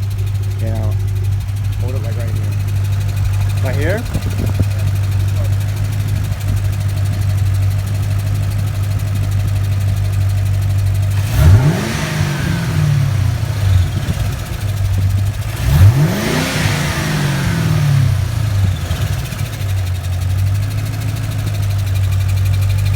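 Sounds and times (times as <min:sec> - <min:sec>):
car engine idling and revving: 0:00.0 - 0:22.9
fast engine ticking: 0:00.0 - 0:22.9.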